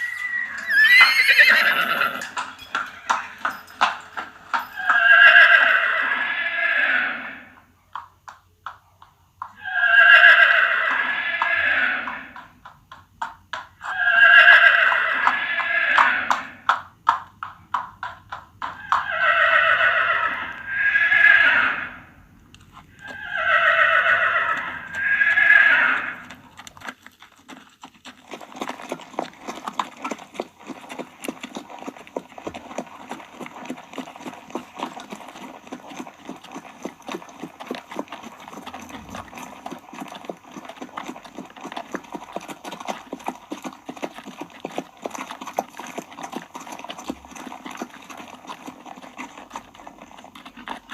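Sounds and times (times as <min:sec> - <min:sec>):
horse whinnying: 0:00.0 - 0:03.4, 0:04.6 - 0:07.5, 0:09.6 - 0:12.4, 0:13.8 - 0:16.6, 0:18.6 - 0:22.2, 0:22.9 - 0:26.4
fast hoofbeats: 0:00.0 - 0:05.9, 0:12.0 - 0:19.9, 0:22.6 - 0:50.9.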